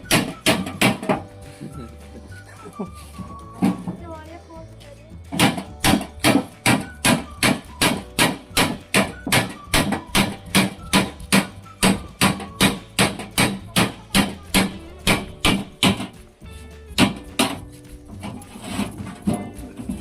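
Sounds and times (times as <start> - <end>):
hammer blows on a door: 0.0 - 1.3, 5.3 - 16.1.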